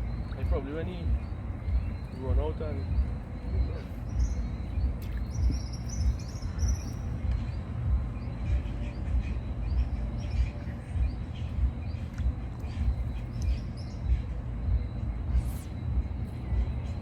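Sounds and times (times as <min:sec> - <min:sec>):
birds chirping: 0:00.0 - 0:17.0
low uneven rumble: 0:00.0 - 0:17.0.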